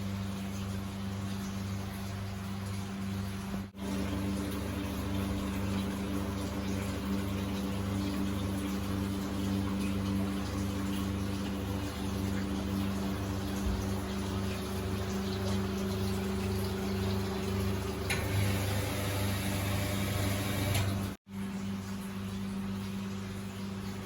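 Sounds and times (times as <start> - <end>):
water rushing: 10.7 - 21.2
boat engine humming: 11.1 - 21.2.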